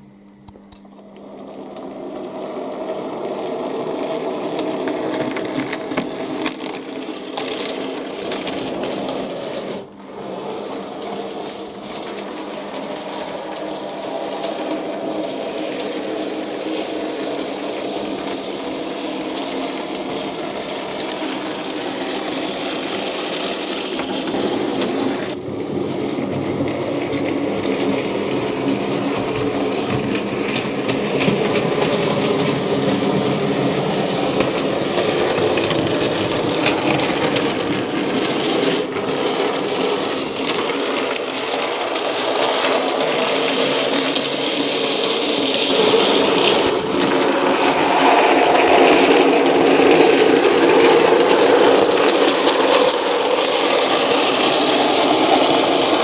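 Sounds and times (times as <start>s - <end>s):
model train motor whirring: 0.8s - 56.0s
wheels ticking on rails: 3.4s - 56.0s.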